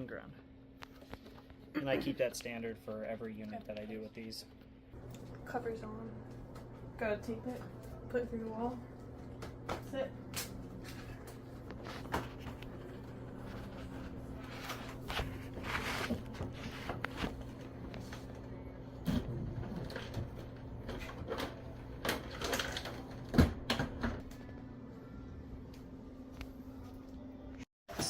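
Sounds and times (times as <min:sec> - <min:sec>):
low electrical hum: 0:00.0 - 0:27.6
scraping and rustling: 0:11.2 - 0:17.8.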